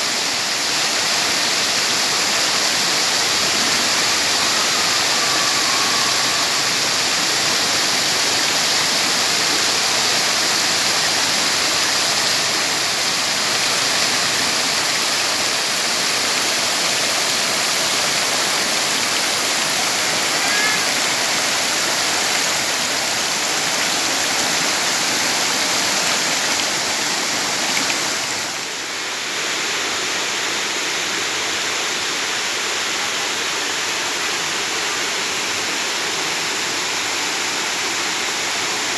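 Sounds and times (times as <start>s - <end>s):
waterfall rushing: 0.0s - 38.9s.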